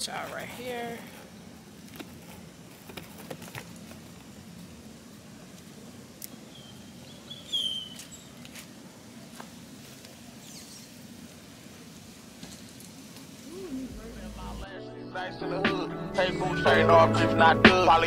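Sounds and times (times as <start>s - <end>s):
steady low hum: 13.4s - 14.8s.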